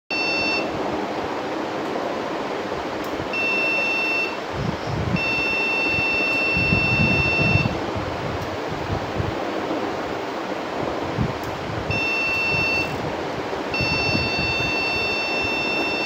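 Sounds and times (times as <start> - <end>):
computer error beeps: 0.1 - 0.7, 3.4 - 4.4, 5.2 - 7.7, 11.9 - 13.0
steady background noise: 0.1 - 16.0.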